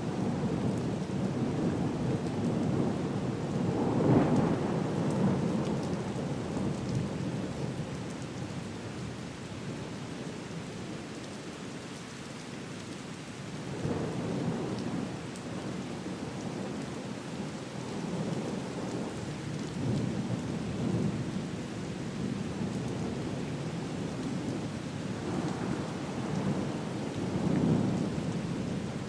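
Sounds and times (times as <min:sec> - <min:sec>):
steady rain: 0:00.0 - 0:29.0
low rolling thunder: 0:01.4 - 0:07.1, 0:19.8 - 0:21.3, 0:24.0 - 0:29.0.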